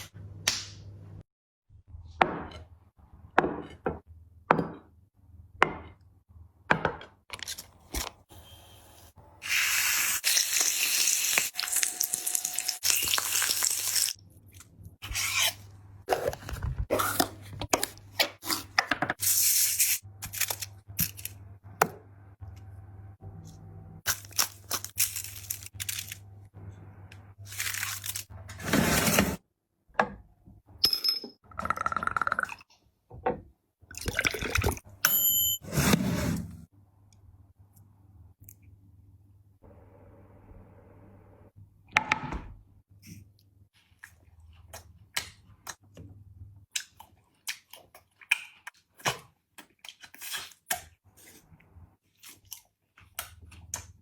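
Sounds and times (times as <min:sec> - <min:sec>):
close eating crunches and smacks: 0:46.6 - 0:54.0.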